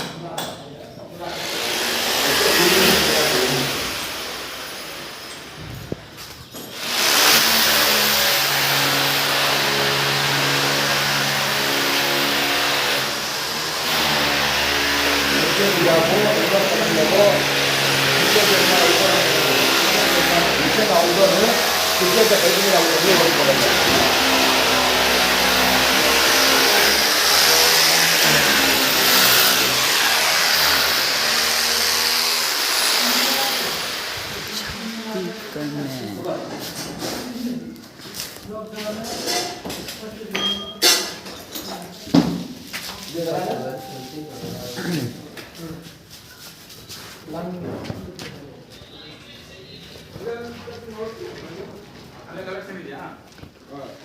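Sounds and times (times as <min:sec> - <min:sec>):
machine motor hissing and humming: 0:01.3 - 0:05.3, 0:06.8 - 0:35.7.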